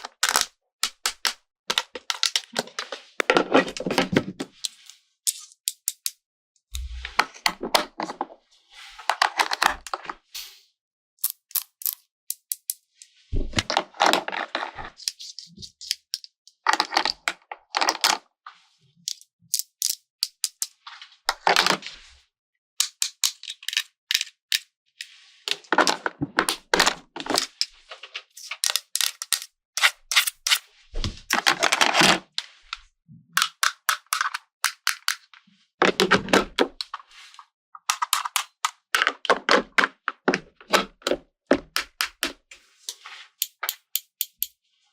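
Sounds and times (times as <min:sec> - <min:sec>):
plastic toy pieces clicking: 0:00.0 - 0:02.6, 0:05.3 - 0:06.2, 0:11.2 - 0:12.8, 0:19.1 - 0:20.7, 0:22.8 - 0:24.7, 0:28.6 - 0:29.5, 0:33.4 - 0:35.2, 0:37.8 - 0:39.3, 0:43.4 - 0:44.6.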